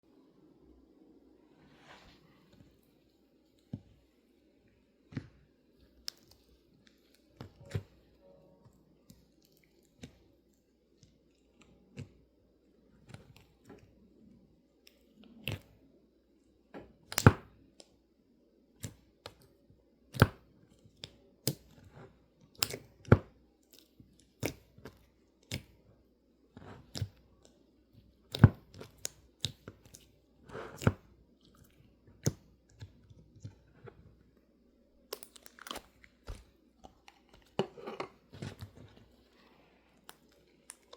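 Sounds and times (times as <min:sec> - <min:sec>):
faint low hum: 0:00.0 - 0:40.9
slime squishing with clicks and pops: 0:05.0 - 0:16.0, 0:16.8 - 0:34.4, 0:35.0 - 0:37.6.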